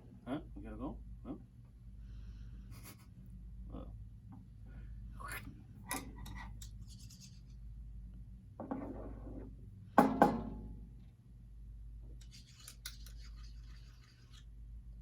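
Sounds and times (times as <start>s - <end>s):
low room hum: 0.0s - 15.0s
light scrapes and rustles: 5.9s - 7.6s, 12.1s - 14.5s
rattling scrape: 12.2s - 14.5s.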